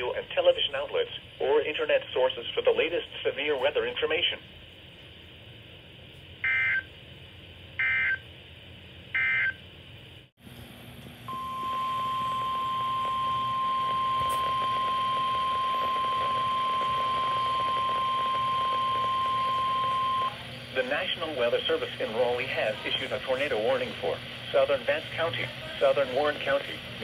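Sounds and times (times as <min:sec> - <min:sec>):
steady alarm tone: 0:11.3 - 0:26.9.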